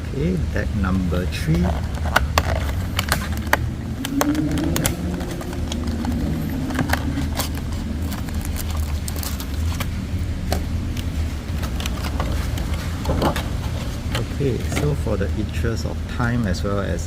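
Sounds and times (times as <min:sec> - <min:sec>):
steady low hum: 0:00.0 - 0:17.0
cards clicking and rustling: 0:01.5 - 0:15.0.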